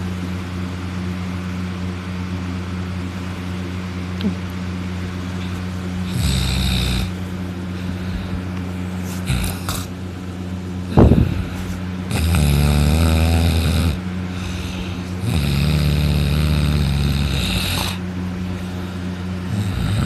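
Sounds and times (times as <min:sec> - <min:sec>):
steady low hum: 0:00.0 - 0:20.0
man snoring loudly: 0:06.0 - 0:07.2, 0:09.2 - 0:09.9, 0:10.9 - 0:18.0, 0:19.4 - 0:20.0.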